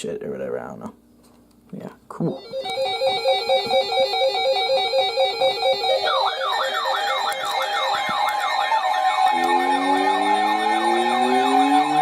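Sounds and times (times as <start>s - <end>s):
electronic music with synth pattern: 2.3s - 12.0s
siren-like swooping tones: 2.4s - 12.0s
slowly rising low tones: 4.7s - 12.0s.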